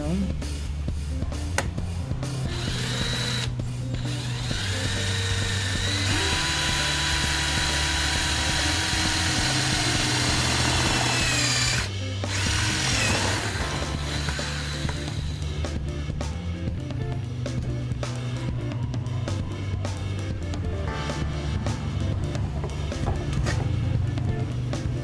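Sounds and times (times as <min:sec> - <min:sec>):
background music: 0:00.0 - 0:25.0
cordless drill whining: 0:02.5 - 0:15.4.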